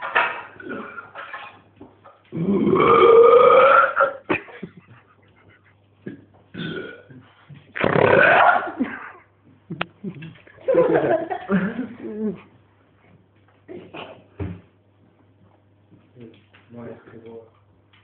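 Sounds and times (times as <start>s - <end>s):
man belching: 0.6s - 1.1s, 2.3s - 4.2s, 6.1s - 7.1s, 7.8s - 8.7s.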